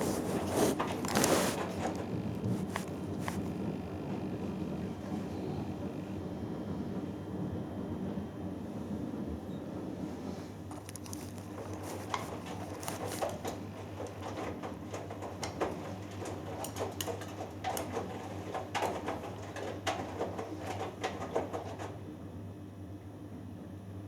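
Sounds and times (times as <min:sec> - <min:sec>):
washing machine motor hum: 0:00.0 - 0:24.0
wet laundry sloshing in drum: 0:10.7 - 0:22.0.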